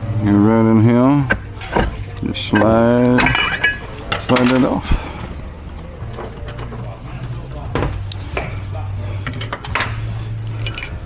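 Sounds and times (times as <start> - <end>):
steady low hum: 0.0 - 11.0
metal parts clinking and knocking: 1.2 - 7.4, 9.2 - 11.0.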